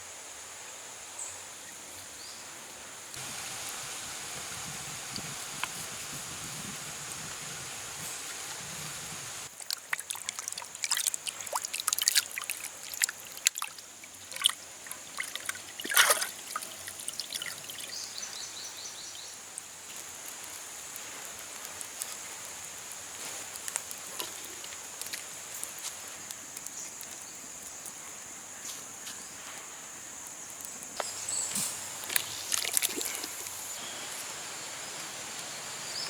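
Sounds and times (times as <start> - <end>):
water trickling and splashing: 3.2 - 26.2, 31.0 - 36.0.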